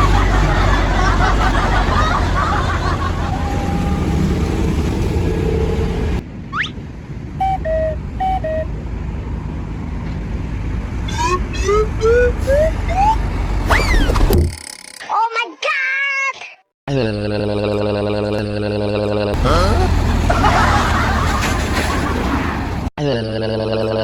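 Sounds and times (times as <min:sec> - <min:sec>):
musical bus horn: 0:00.0 - 0:06.1, 0:07.4 - 0:08.8
street and vehicle noise: 0:00.0 - 0:15.8, 0:19.4 - 0:22.9.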